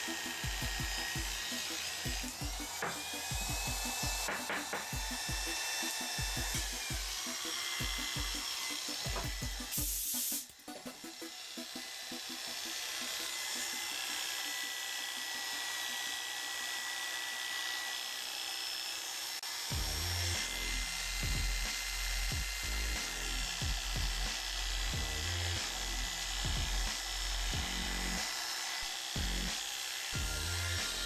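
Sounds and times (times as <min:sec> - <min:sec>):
background music with low beat: 0:00.0 - 0:15.2, 0:19.7 - 0:28.4, 0:29.2 - 0:29.6, 0:30.2 - 0:31.0.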